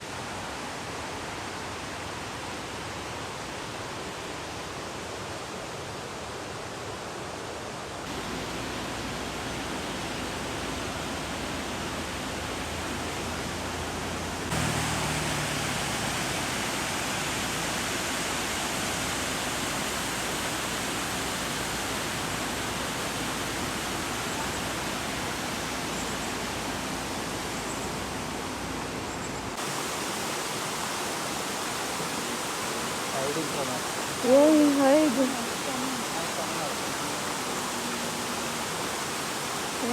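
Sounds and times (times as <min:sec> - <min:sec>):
waterfall rushing: 0:08.0 - 0:39.9.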